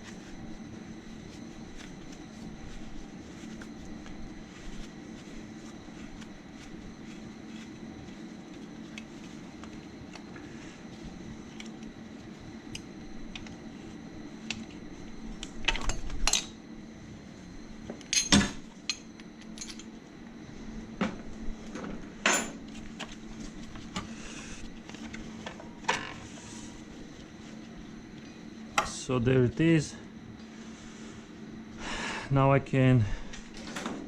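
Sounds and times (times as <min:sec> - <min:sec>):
steady low hum: 0:00.0 - 0:34.0
metal tools clinking and knocking: 0:18.1 - 0:19.9.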